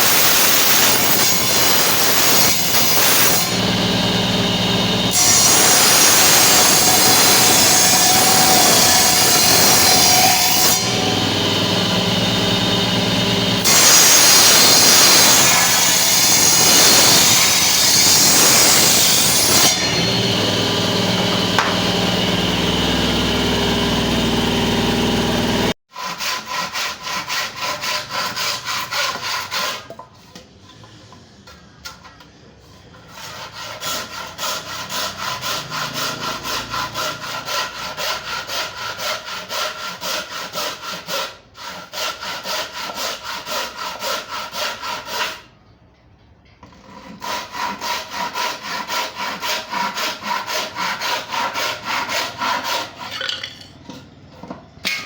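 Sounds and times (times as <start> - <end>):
hand saw cutting wood: 0.0 - 30.0, 32.8 - 45.5, 46.6 - 53.5.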